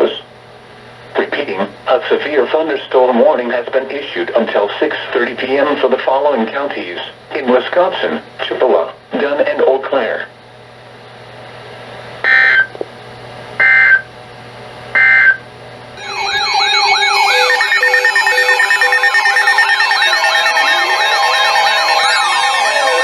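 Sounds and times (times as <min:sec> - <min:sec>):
data tone bursts: 0:12.3 - 0:12.7, 0:13.6 - 0:14.0, 0:15.0 - 0:15.4, 0:16.0 - 0:23.0
steady alert tones: 0:15.0 - 0:15.4, 0:16.0 - 0:23.0
many sirens wailing: 0:16.0 - 0:23.0.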